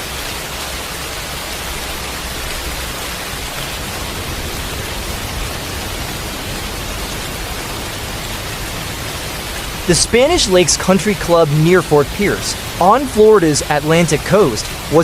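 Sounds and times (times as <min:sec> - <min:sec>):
rain and wind hissing: 0:00.0 - 0:15.0
low rumble: 0:01.9 - 0:10.5.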